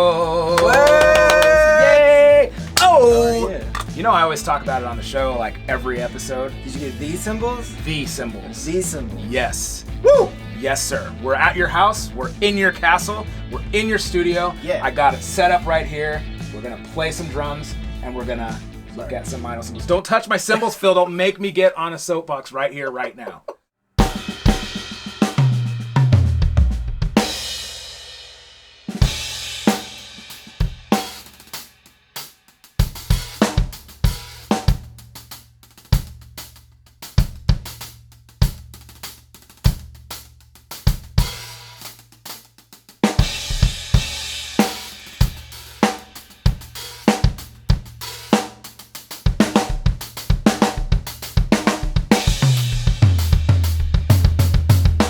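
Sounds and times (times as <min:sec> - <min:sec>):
tom fill: 0:00.0 - 0:15.4
drum kit playing a beat: 0:00.0 - 0:20.8, 0:23.2 - 0:55.0.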